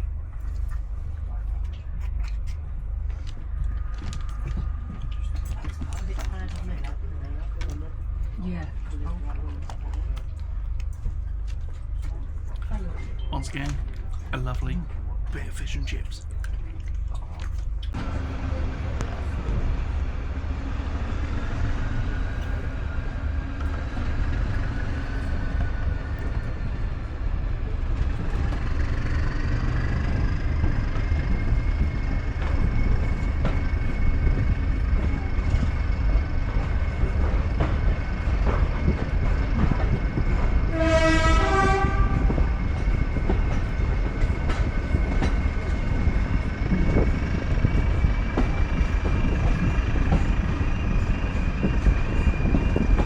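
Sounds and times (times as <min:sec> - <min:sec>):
train rumbling: 0:00.0 - 0:53.0
locomotive whine: 0:18.0 - 0:53.0
two-tone locomotive horn: 0:40.4 - 0:43.2.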